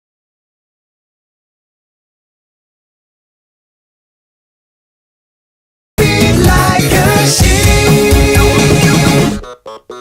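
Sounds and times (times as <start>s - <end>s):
loud music: 6.0s - 9.5s.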